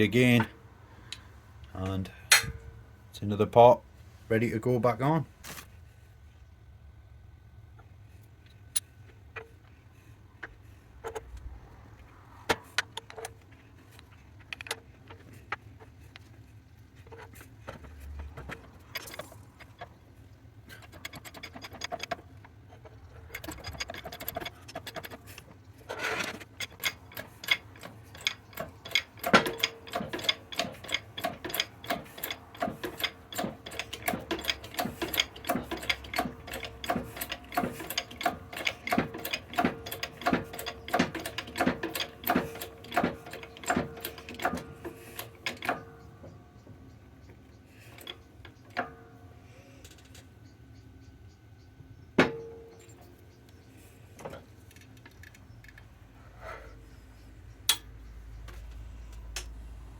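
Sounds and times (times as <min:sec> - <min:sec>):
steady machine hum: 0:14.8 - 0:59.9
air press rapid clicking: 0:26.6 - 0:45.9.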